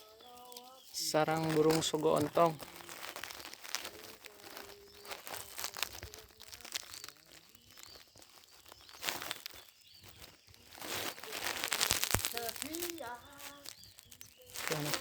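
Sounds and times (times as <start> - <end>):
dry nest material rustling: 0.0 - 15.0.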